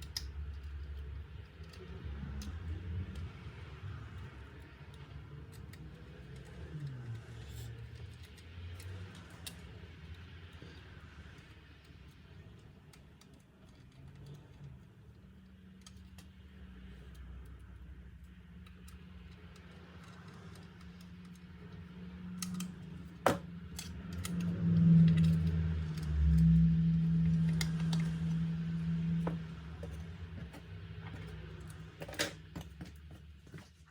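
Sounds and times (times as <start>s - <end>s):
low steady hum: 0.0s - 33.9s.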